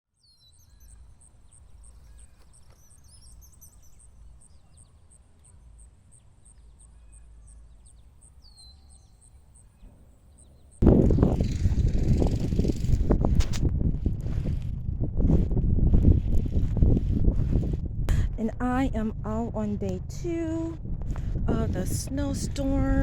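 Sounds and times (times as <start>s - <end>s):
small birds chirping: 0.2s - 12.9s
low outdoor rumble: 9.8s - 23.0s.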